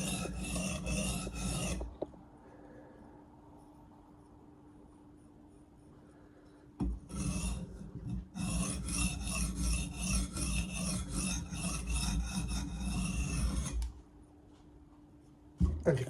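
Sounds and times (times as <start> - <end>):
blade scraping on sharpening stone: 0.0 - 1.9, 7.0 - 13.9.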